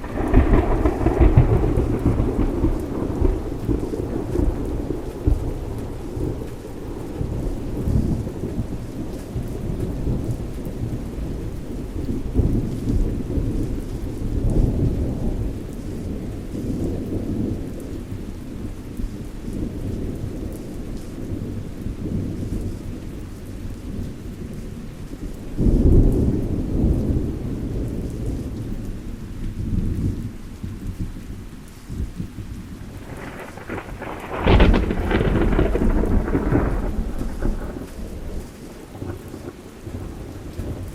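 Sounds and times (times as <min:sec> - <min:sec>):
sharp thunderclap: 0:00.0 - 0:08.8, 0:32.9 - 0:40.9
rolling thunder: 0:00.0 - 0:40.9
steady rain: 0:00.0 - 0:40.9.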